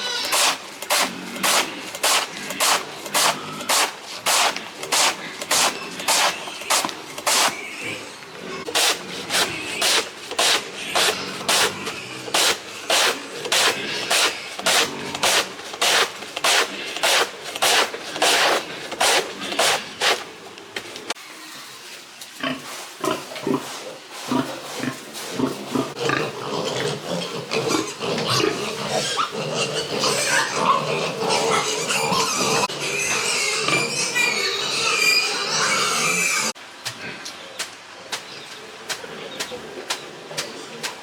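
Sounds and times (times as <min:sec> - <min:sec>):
pigs grunting and squealing: 0:00.0 - 0:15.6, 0:24.3 - 0:37.3.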